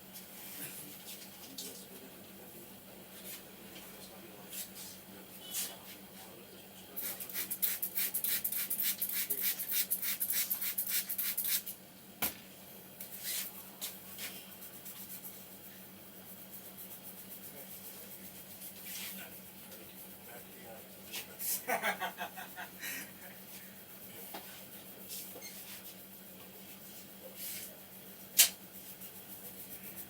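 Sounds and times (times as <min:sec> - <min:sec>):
sharp click: 0:28.4 - 0:28.6.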